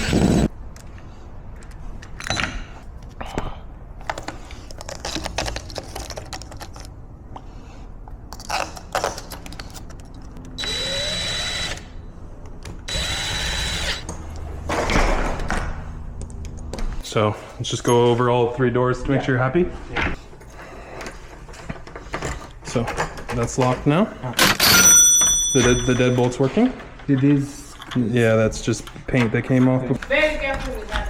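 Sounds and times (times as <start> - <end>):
power drill whining: 10.6 - 11.9, 12.9 - 14.0.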